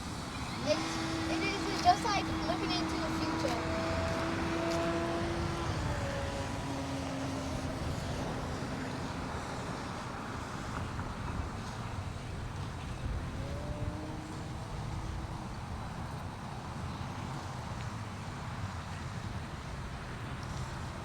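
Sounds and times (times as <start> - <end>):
small electric motor whining: 0.1 - 16.2
wind noise on microphone: 0.1 - 17.2.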